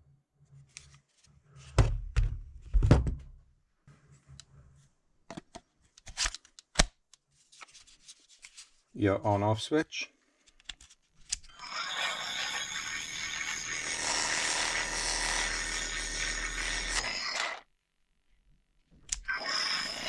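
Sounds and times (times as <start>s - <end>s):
cordless jigsaw running: 11.5s - 17.6s, 19.2s - 20.0s.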